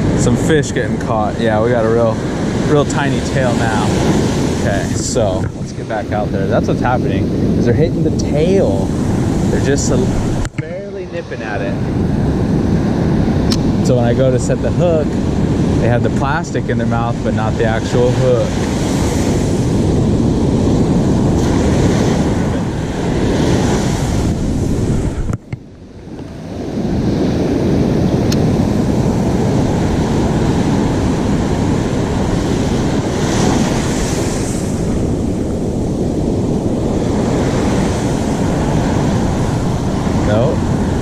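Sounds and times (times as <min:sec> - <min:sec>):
ocean surf rolling in: 0:00.0 - 0:41.0
wind buffeting microphone: 0:00.0 - 0:41.0.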